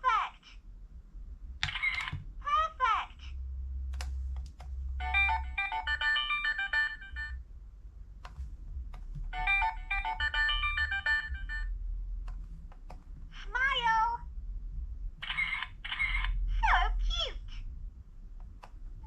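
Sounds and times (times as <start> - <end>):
toy phone ringtone melody: 5.0 - 7.4, 9.4 - 11.7.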